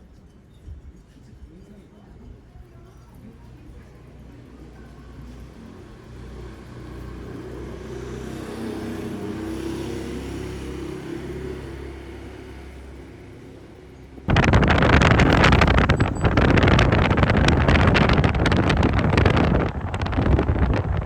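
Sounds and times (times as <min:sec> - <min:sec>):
wind noise on microphone: 0:00.1 - 0:01.6, 0:14.2 - 0:21.0.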